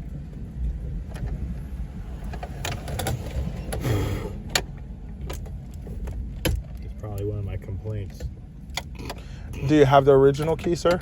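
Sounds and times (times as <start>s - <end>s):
low rumble: 0.0s - 11.0s.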